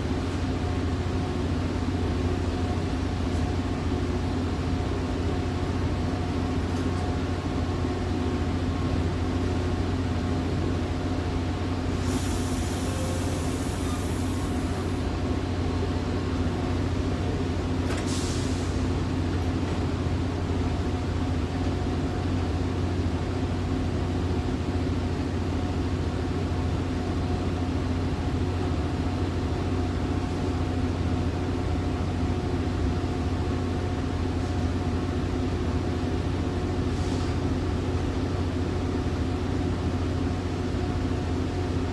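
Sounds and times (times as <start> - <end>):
train coach hum: 0.0 - 41.9
air hiss: 12.0 - 15.1.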